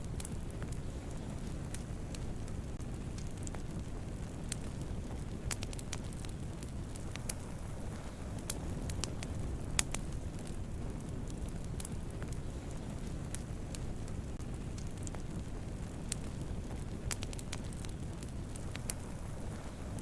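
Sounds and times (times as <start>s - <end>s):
fire crackling and popping: 0.0s - 20.0s
fire rumbling: 0.0s - 20.0s.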